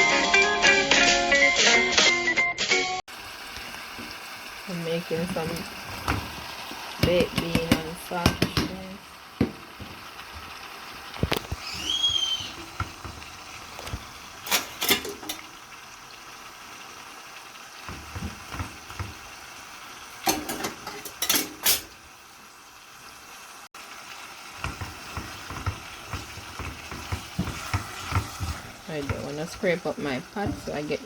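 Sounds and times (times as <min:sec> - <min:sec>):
food sizzling in a pot: 0:03.1 - 0:31.0
utensil clinking against pot: 0:14.5 - 0:15.5, 0:20.2 - 0:21.9.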